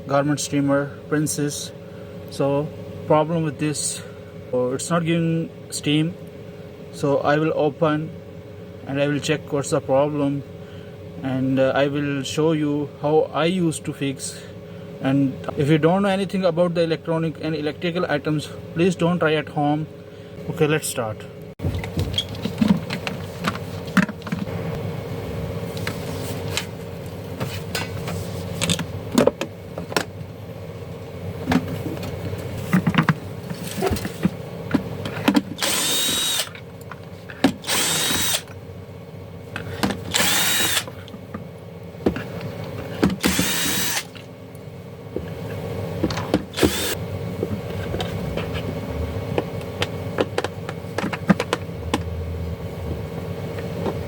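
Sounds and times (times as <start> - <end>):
electric screwdriver whirring: 35.6 - 36.6, 37.6 - 38.5, 40.1 - 40.9, 43.2 - 44.2, 46.5 - 47.0.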